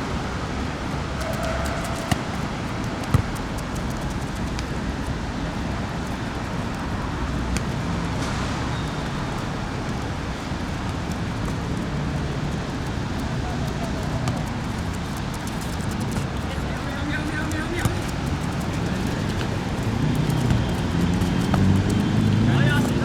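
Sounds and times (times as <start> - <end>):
distant traffic: 0.0 - 23.0.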